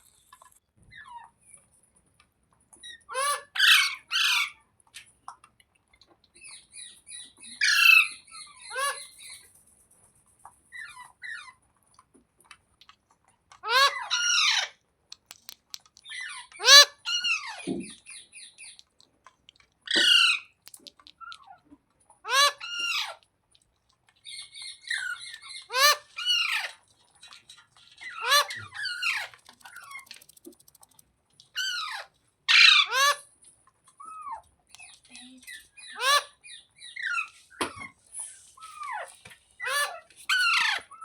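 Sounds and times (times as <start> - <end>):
parrot chirps and chatter: 0.0 - 41.0
parrot squawking: 3.1 - 4.6, 7.6 - 9.1, 13.6 - 14.8, 16.1 - 17.7, 19.9 - 20.5, 22.2 - 23.2, 24.8 - 26.8, 27.9 - 30.1, 31.6 - 33.3, 35.8 - 37.8, 38.6 - 41.0.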